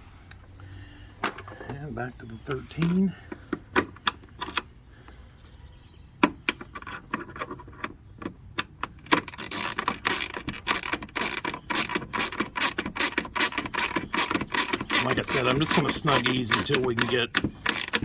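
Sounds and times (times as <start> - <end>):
ratchet wrench clicking: 9.2 - 18.0.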